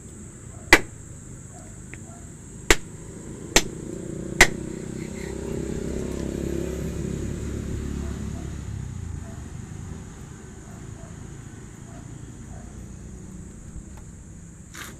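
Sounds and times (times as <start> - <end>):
steady high hiss: 0.0 - 6.7
sharp knocks: 0.7 - 1.1, 2.7 - 4.8.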